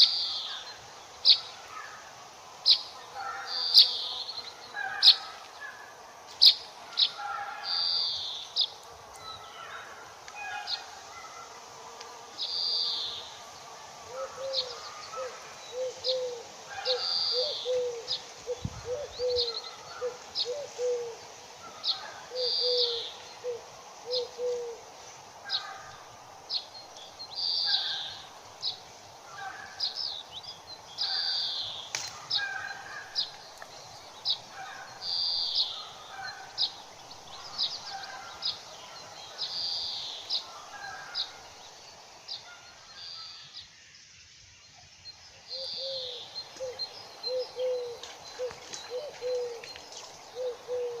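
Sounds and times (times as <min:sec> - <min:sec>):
birds chirping and calling: 0:00.0 - 0:43.8, 0:44.6 - 0:51.0
dove cooing: 0:14.0 - 0:25.9, 0:45.5 - 0:49.7, 0:50.3 - 0:51.0.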